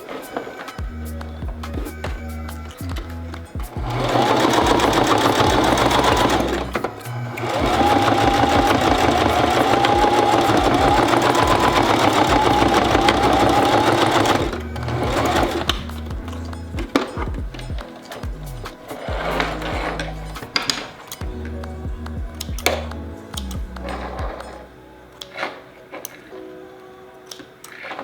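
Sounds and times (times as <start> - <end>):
background music: 0.0 - 28.0
electric sewing machine stitching: 3.8 - 15.9.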